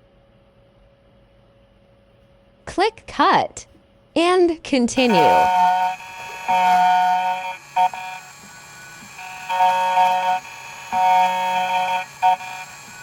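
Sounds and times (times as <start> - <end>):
key cutting machine whining: 5.0 - 13.0.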